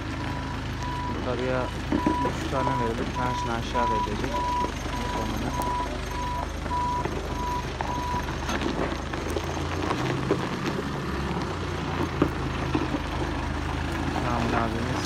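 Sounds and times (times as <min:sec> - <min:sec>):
reversing alarm beeping: 0:00.0 - 0:08.4
diesel engine running: 0:00.0 - 0:15.0.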